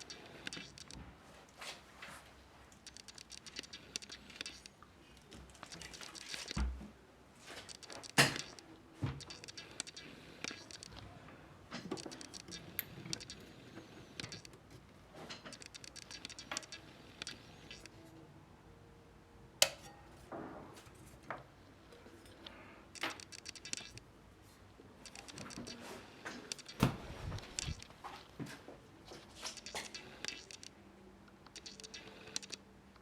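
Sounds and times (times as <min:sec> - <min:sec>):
hard objects clicking and rattling: 0:00.0 - 0:01.0, 0:02.8 - 0:04.8, 0:07.6 - 0:11.0, 0:11.7 - 0:17.9, 0:22.0 - 0:24.0, 0:25.0 - 0:28.0, 0:29.4 - 0:30.7, 0:31.4 - 0:32.6
sharp clicks: 0:00.0 - 0:01.0, 0:02.7 - 0:04.9, 0:05.6 - 0:06.6, 0:07.6 - 0:11.0, 0:11.8 - 0:14.6, 0:15.3 - 0:18.0, 0:22.4 - 0:24.1, 0:25.0 - 0:28.0, 0:29.4 - 0:33.0.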